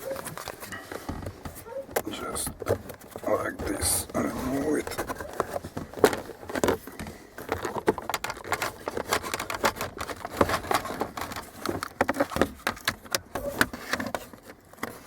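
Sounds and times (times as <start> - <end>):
keypad handling clicks and rattles: 7.4 - 14.2.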